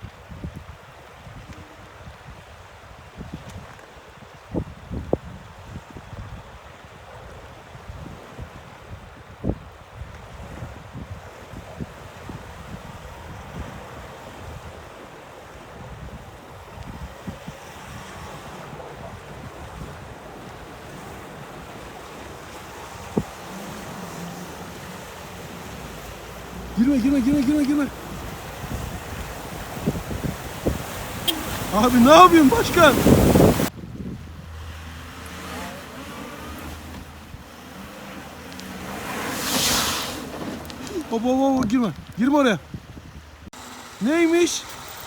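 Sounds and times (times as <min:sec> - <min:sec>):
wind on microphone: 0:00.0 - 0:35.5, 0:36.4 - 0:43.5
creek water flowing: 0:06.4 - 0:45.0
vehicle engine humming: 0:21.4 - 0:41.8, 0:43.2 - 0:45.0.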